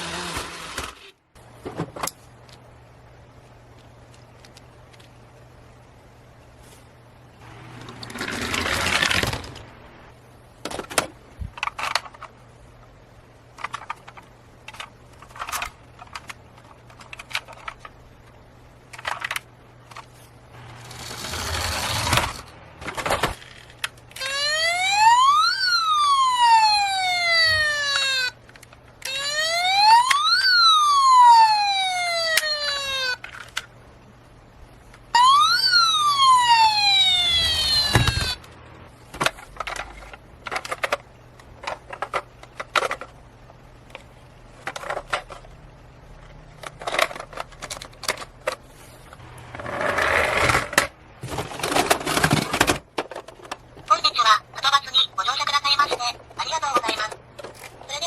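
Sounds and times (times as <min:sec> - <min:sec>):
toy cars rolling down plastic slide: 0:07.7 - 0:09.6, 0:20.8 - 0:22.5, 0:49.5 - 0:53.3
toy electronic siren wailing: 0:24.2 - 0:28.4, 0:29.0 - 0:33.2, 0:35.2 - 0:38.4.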